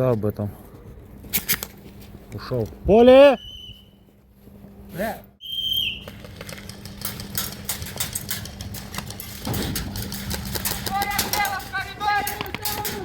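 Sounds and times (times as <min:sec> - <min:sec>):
short high whistle-like tone: 0:03.4 - 0:04.0
sharp clicks and knocks: 0:06.1 - 0:13.0.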